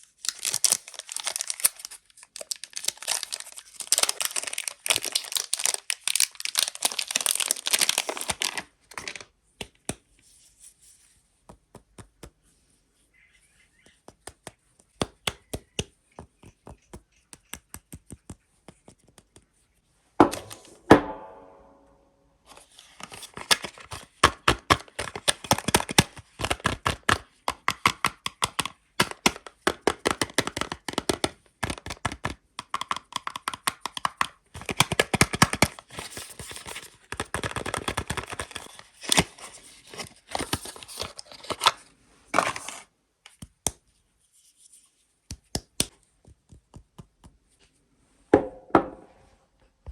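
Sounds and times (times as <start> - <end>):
wrapper crackling and tearing: 0.0 - 9.3, 22.8 - 27.2, 34.6 - 42.9
single thunk: 48.4 - 49.1.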